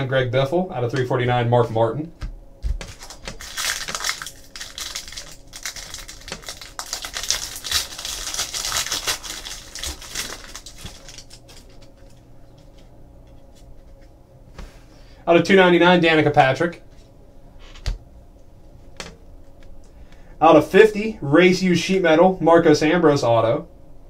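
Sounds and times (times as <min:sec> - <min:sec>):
wrapper crinkling and cards rustling: 0:02.7 - 0:12.9.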